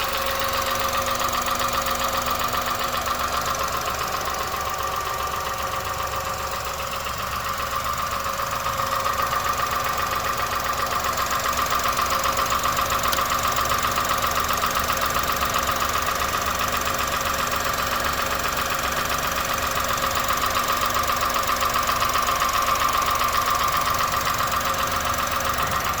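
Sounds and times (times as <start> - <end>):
car engine idling with tapping: 0.0 - 26.0.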